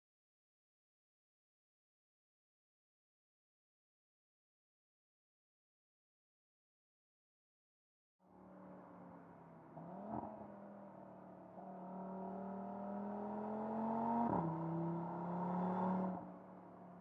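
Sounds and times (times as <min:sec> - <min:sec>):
car engine accelerating hard: 0:09.7 - 0:16.4.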